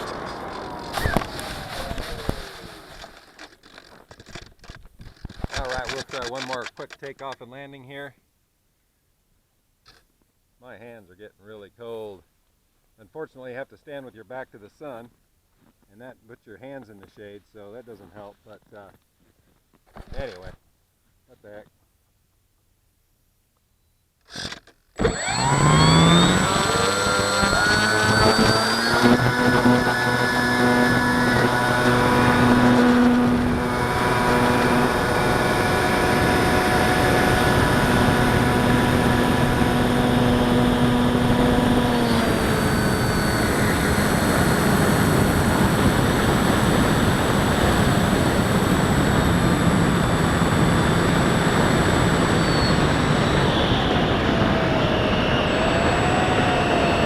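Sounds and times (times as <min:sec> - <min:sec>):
electric motor and propeller whine: 0:00.0 - 0:04.4, 0:24.3 - 0:57.0.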